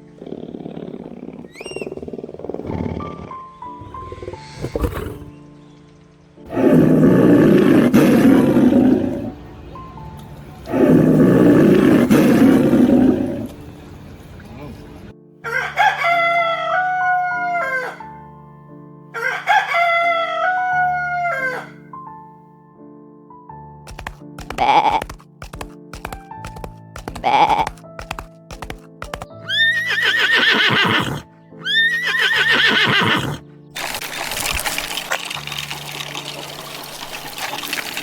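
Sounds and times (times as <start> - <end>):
rough drawn-out animal calls: 0.0 - 5.5, 24.4 - 25.2, 27.1 - 27.8
background music: 0.0 - 38.0
rooster crowing: 15.4 - 18.1, 19.2 - 21.8.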